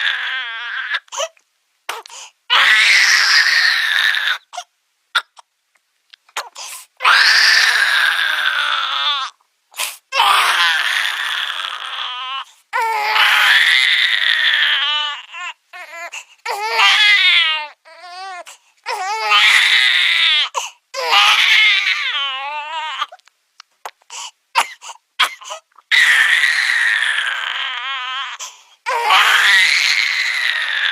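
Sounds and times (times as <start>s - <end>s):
baby crying: 0.0s - 5.4s, 6.4s - 9.4s, 10.1s - 23.3s, 24.6s - 30.9s.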